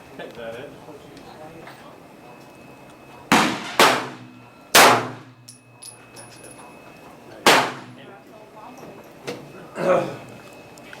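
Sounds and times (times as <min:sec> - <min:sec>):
gunshots with short echo: 0:03.3 - 0:04.2, 0:04.8 - 0:05.2.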